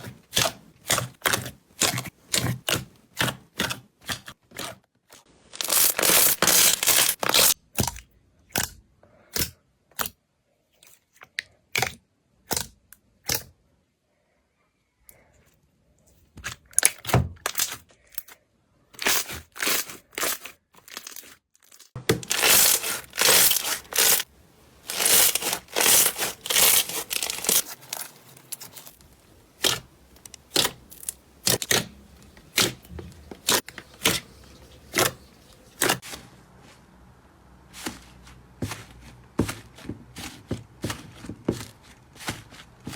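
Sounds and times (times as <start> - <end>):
slime crackling and popping: 22.2 - 36.0.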